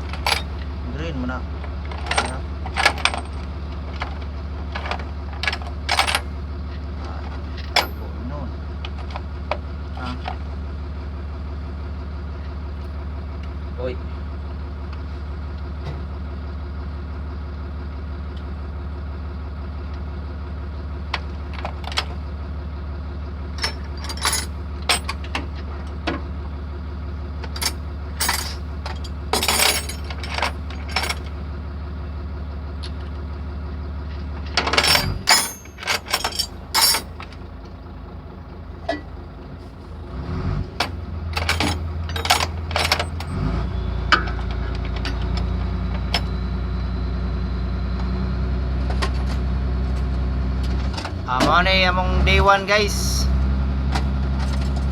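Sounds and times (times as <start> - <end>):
different engine hum: 0.0 - 54.9
engine idling hum: 0.0 - 54.9
metallic clinks of tools: 34.8 - 37.1.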